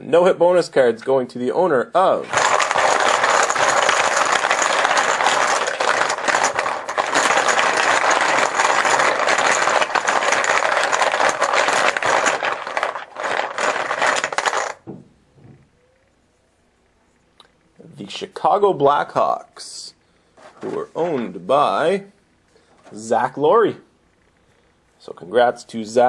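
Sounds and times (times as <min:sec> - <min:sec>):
chips clattering together: 0:02.2 - 0:14.8.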